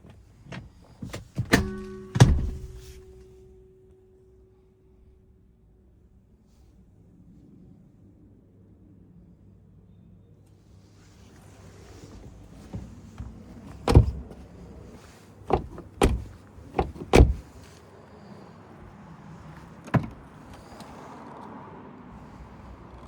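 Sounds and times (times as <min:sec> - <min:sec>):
sharp clunks and knocks: 0:01.0 - 0:03.0, 0:12.7 - 0:14.4, 0:15.5 - 0:17.5, 0:19.6 - 0:20.8.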